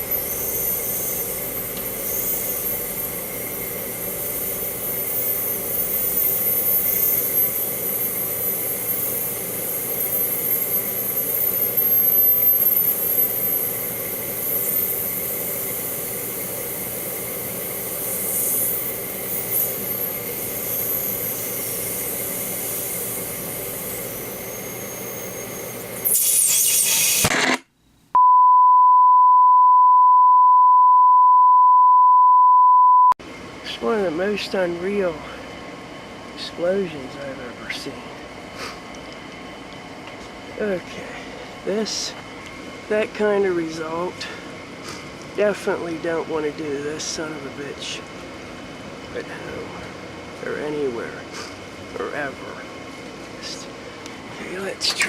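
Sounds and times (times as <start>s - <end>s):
microwave oven humming: 0.0s - 26.1s
high wavering whine: 0.0s - 28.4s, 39.6s - 48.2s
steady high beep tone: 28.2s - 33.2s.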